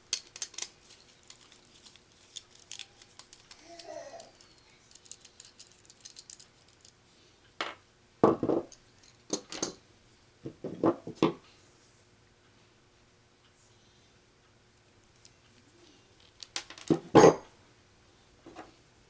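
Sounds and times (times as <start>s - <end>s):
metal connectors being handled: 0.0s - 7.0s, 8.7s - 9.8s.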